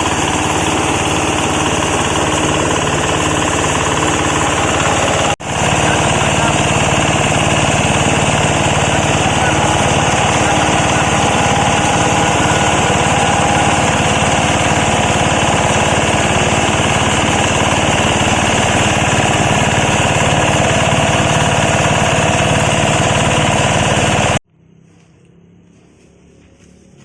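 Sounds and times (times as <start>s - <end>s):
shredding machine running: 0.0s - 24.4s.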